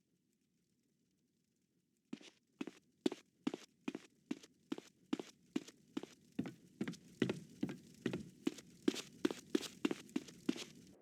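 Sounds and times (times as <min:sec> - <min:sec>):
footsteps walking: 0:02.2 - 0:10.9.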